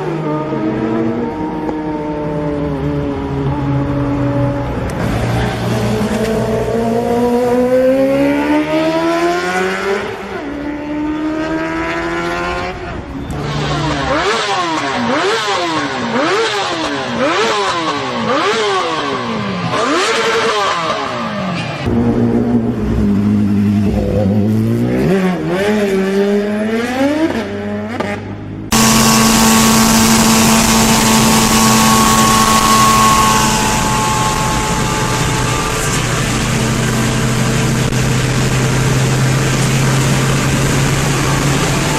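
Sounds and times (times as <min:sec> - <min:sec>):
motorcycle engine revving: 0:00.0 - 0:41.9
steady engine note: 0:28.7 - 0:41.9.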